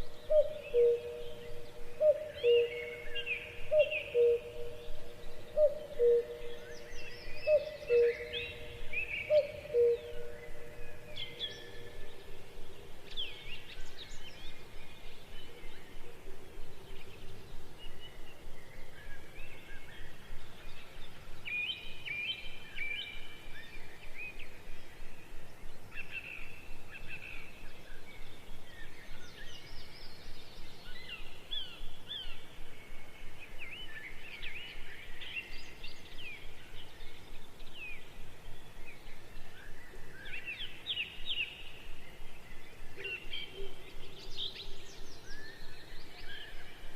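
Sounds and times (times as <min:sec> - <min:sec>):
birds chirping: 0:00.0 - 0:16.0.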